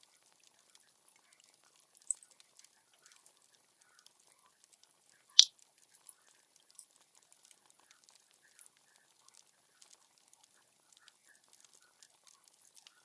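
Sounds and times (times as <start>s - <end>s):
wood fire crackling: 0.2s - 13.0s.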